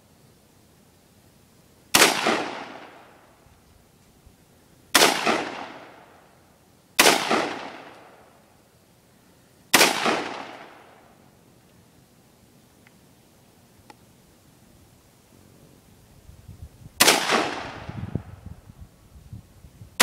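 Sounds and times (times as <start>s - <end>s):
rifle shots with echo: 1.9s - 3.1s, 5.0s - 6.2s, 7.0s - 8.2s, 9.7s - 11.0s, 17.0s - 17.9s.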